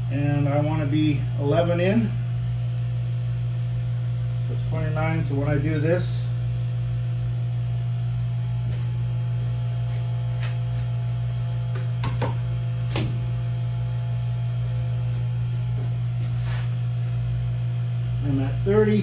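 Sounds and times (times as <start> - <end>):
pump electric hum: 0.0 - 19.0.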